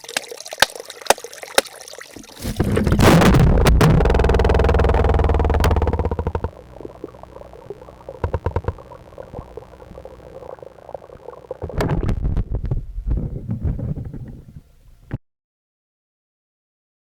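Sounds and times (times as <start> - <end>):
water gurgling: 0.0 - 14.5
sharp clicks and knocks: 3.7 - 6.6, 8.2 - 9.5.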